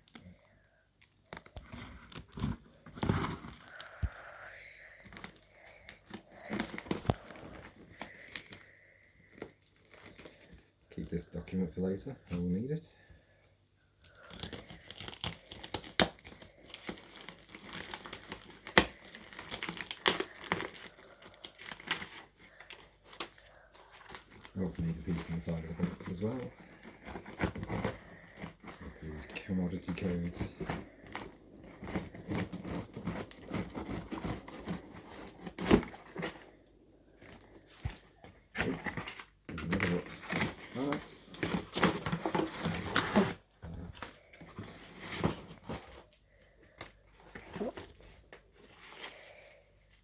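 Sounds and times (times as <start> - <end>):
packaging crinkling and rustling: 1.0 - 12.8, 14.0 - 50.0
packaging sharp cracks: 14.0 - 23.4.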